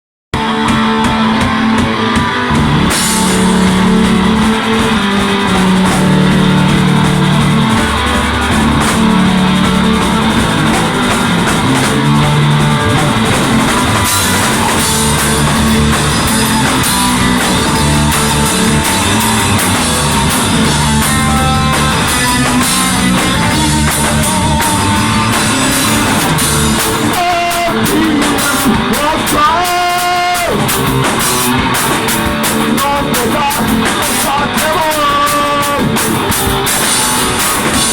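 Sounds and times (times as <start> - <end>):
drum kit: 0.3 - 37.9
rock band playing: 0.3 - 37.9
electric guitar: 0.4 - 37.9.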